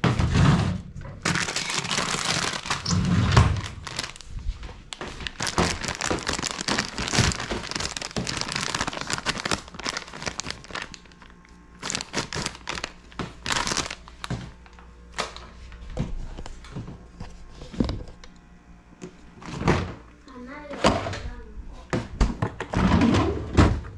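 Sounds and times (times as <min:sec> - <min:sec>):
packaging crinkling and rustling: 0:01.2 - 0:15.6.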